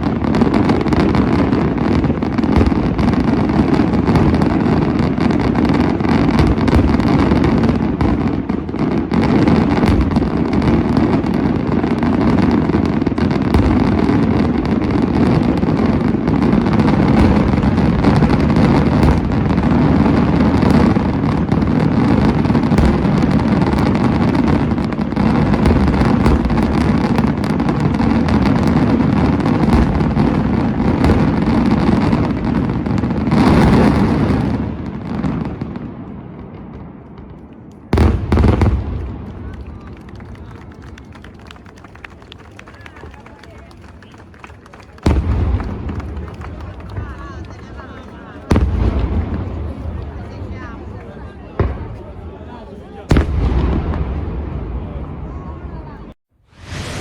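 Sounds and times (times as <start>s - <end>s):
fireworks bangs and crackles: 0.0s - 57.0s.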